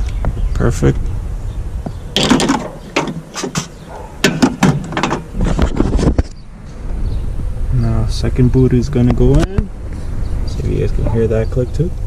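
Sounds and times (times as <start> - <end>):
hand tools clicking and clattering: 2.2 - 5.6.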